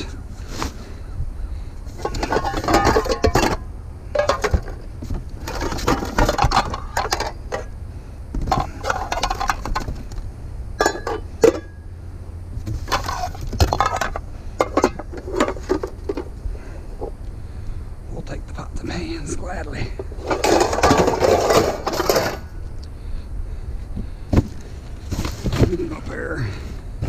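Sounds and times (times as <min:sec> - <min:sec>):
steady low rumble: 0:00.0 - 0:27.0
pots and pans clattering: 0:02.0 - 0:03.6, 0:04.2 - 0:04.8, 0:05.4 - 0:07.7, 0:08.5 - 0:09.9, 0:10.8 - 0:11.8, 0:12.9 - 0:16.2, 0:20.2 - 0:22.5.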